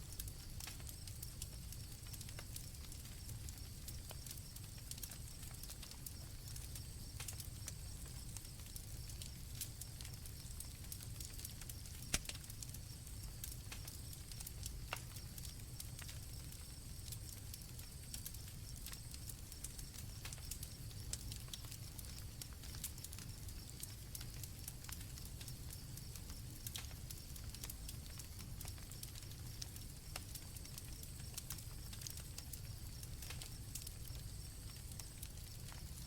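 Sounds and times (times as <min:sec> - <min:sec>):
campfire crackling and popping: 0:00.0 - 0:36.0
crickets chirping: 0:25.6 - 0:36.0.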